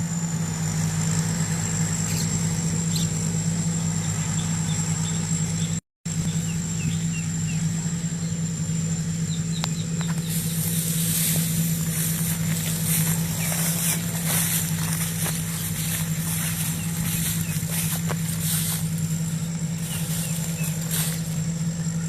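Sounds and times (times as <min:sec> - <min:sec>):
diesel engine drone: 0:00.0 - 0:22.0
high whine: 0:00.0 - 0:22.0
hiss: 0:10.1 - 0:17.0.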